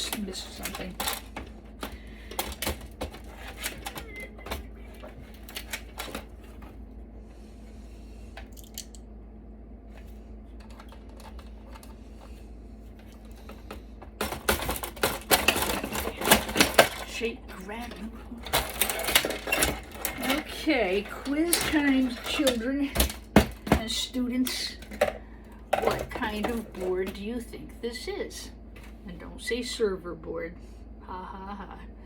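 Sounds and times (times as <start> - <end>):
metal parts clicking and clattering: 0.0 - 6.3, 8.5 - 9.0, 14.2 - 23.9.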